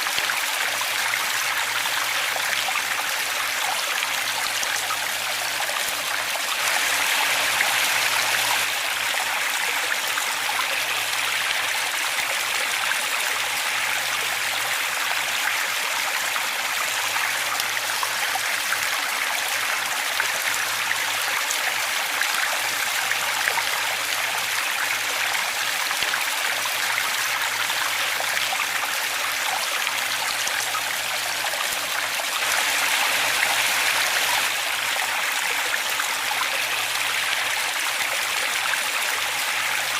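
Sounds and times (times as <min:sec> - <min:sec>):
waterfall rushing: 0:32.4 - 0:35.7.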